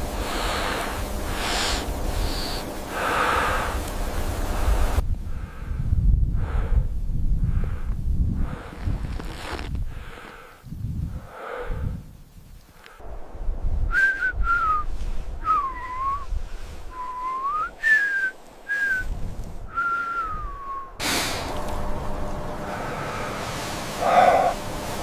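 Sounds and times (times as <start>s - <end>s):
person whistling: 13.9s - 16.3s, 16.9s - 19.1s, 19.7s - 21.0s.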